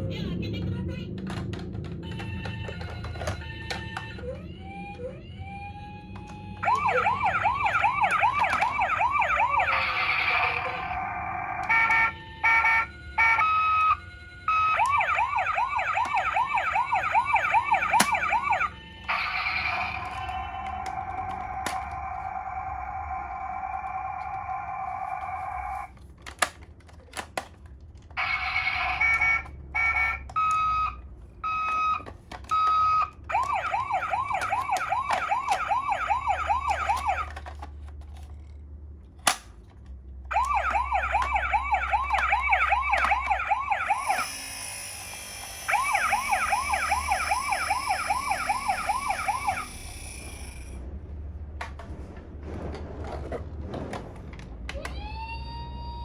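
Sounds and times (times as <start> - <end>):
fast warbling toy siren: 2.0 - 25.9, 28.2 - 37.7, 40.3 - 50.8, 54.8 - 56.0
higher-pitched toy siren: 2.0 - 25.9, 28.2 - 37.7, 40.3 - 50.8, 54.7 - 56.0
toy siren beep: 2.0 - 25.9, 28.2 - 37.4, 40.3 - 50.8, 54.8 - 56.0
two-tone hi-lo siren: 2.0 - 25.9, 28.2 - 32.0, 32.6 - 37.4, 40.3 - 50.8.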